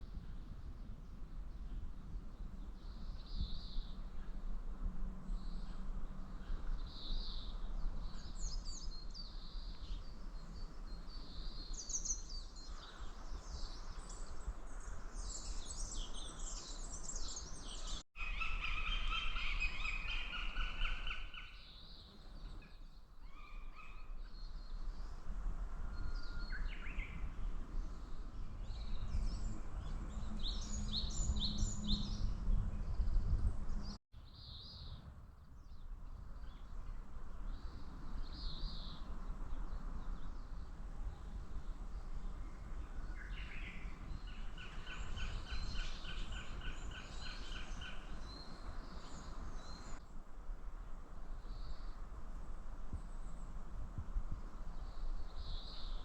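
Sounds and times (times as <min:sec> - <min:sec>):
songbirds chirping and trilling: 0:05.2 - 0:25.2, 0:25.9 - 0:50.0.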